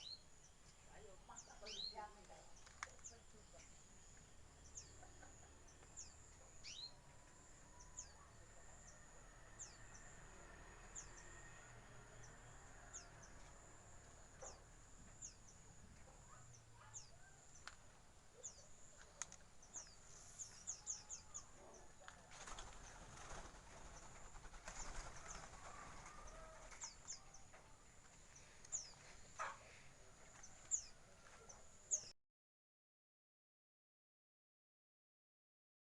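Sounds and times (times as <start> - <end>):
small birds chirping: 0.0 - 32.2
wings fluttering: 2.2 - 3.4, 21.8 - 27.7.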